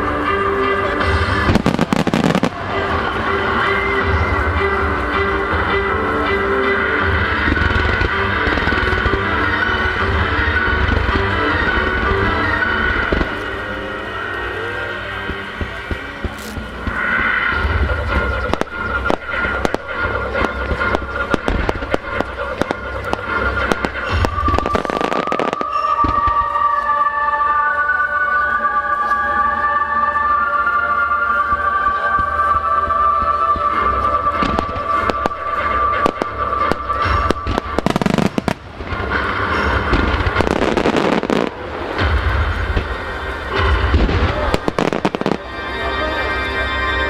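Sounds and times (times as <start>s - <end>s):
fireworks crackling: 0.2s - 27.6s, 31.2s - 46.4s
fireworks bangs: 1.1s - 3.6s, 15.2s - 26.6s, 34.3s - 45.5s.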